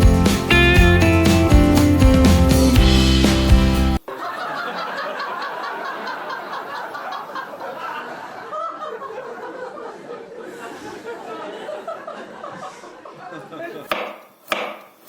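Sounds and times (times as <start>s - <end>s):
acoustic guitar music: 0.0s - 4.0s
people laughing: 4.1s - 14.0s.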